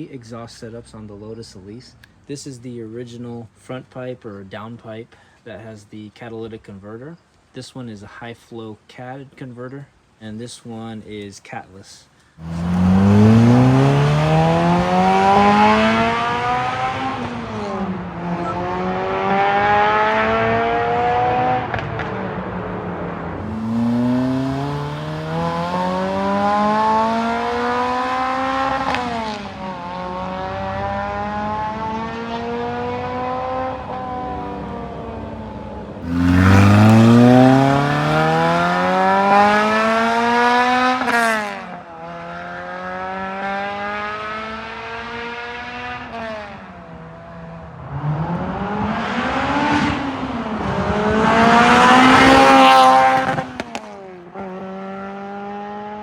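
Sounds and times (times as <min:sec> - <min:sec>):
car exhaust accelerating: 0:12.4 - 0:56.0.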